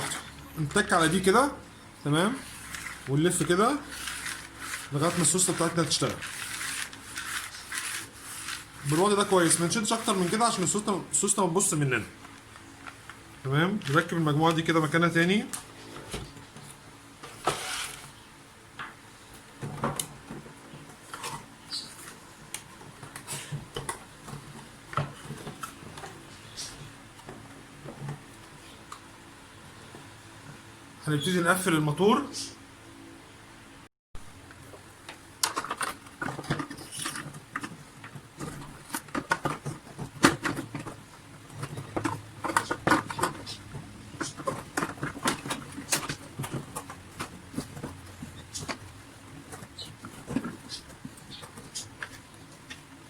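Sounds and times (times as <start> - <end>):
plastic scrape: 2.2 - 11.0, 17.2 - 18.2
plastic parts clicking and knocking: 35.0 - 53.0.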